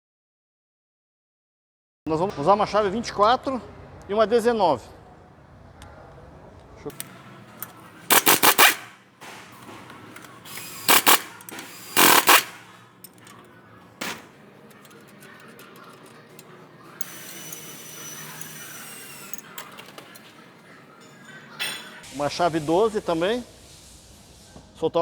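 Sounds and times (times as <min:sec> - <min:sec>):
pneumatic impact wrench hammering: 0:06.9 - 0:20.4.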